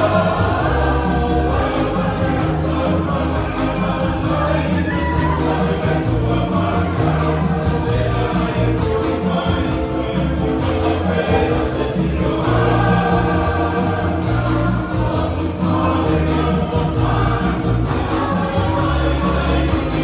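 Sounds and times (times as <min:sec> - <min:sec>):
band accompaniment: 0:00.0 - 0:20.0
choir singing gospel: 0:00.0 - 0:20.0.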